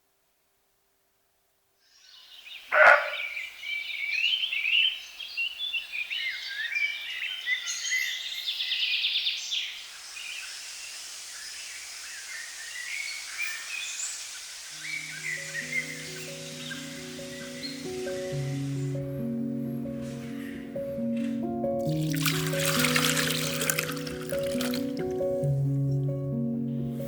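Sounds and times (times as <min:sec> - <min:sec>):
songbirds chirping and singing: 0:02.0 - 0:10.6, 0:11.3 - 0:22.0.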